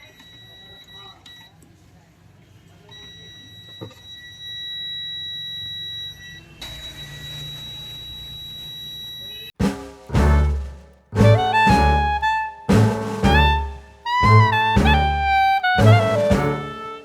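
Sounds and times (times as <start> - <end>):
loud music: 9.6 - 17.0.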